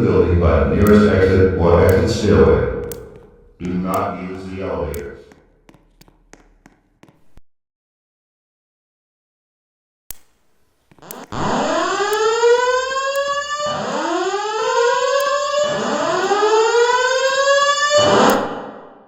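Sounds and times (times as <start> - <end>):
fire alarm rising whoop tone: 11.1 - 18.7.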